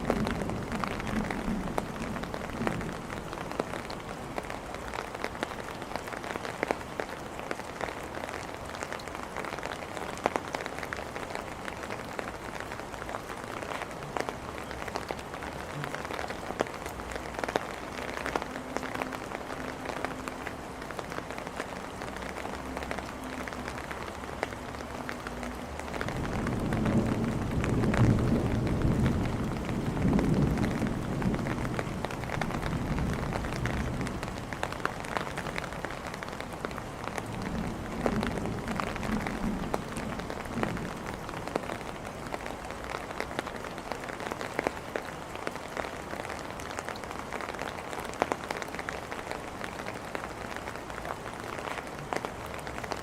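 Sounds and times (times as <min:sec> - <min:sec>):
rain pattering on hard surfaces: 0:00.0 - 0:53.0
rumble of thunder: 0:26.0 - 0:34.4, 0:37.3 - 0:41.8.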